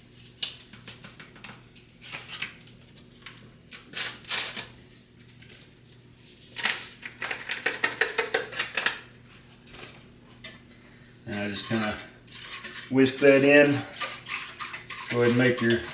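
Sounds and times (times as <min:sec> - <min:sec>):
whisk clinking in pot: 0:11.3 - 0:15.9.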